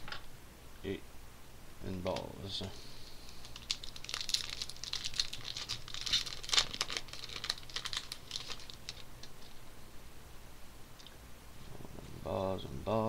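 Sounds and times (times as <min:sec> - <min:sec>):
foil wrapper crinkling: 0:03.2 - 0:09.6.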